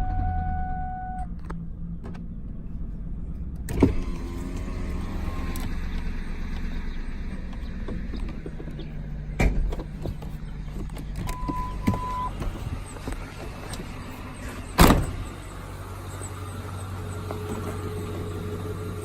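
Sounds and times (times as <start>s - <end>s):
short beep: 0.0s - 1.3s, 11.3s - 12.3s
engine running with ticking: 0.0s - 19.0s
loud thumps: 14.8s - 15.3s.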